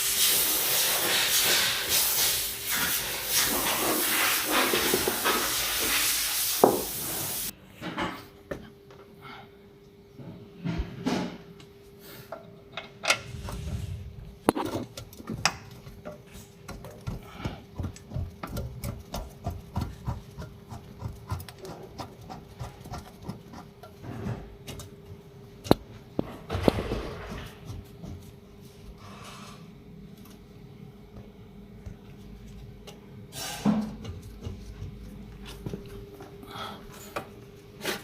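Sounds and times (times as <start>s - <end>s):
faint hum: 7.5s - 18.2s.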